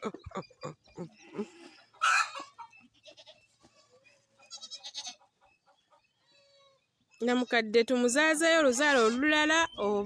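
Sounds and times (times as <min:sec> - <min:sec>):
goats bleating: 0:01.0 - 0:05.2.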